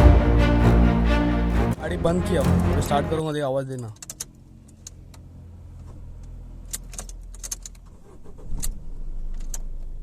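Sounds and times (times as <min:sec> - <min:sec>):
car engine starting and running: 0:00.0 - 0:10.0.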